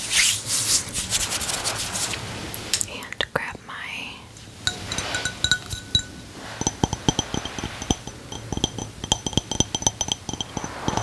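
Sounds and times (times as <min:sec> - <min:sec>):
small hard objects tapping and ringing: 0:04.7 - 0:11.0.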